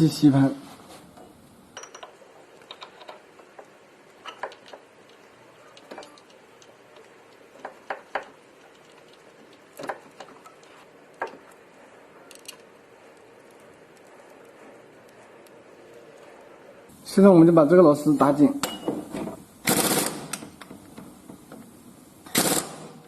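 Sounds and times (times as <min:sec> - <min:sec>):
metallic clicks and knocks: 0:01.8 - 0:10.6.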